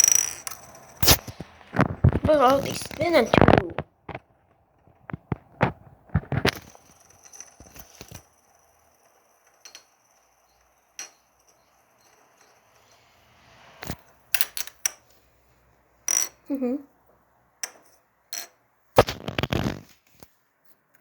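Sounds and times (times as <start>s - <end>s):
plastic toys clicking and knocking: 0.0s - 12.6s, 16.0s - 16.5s.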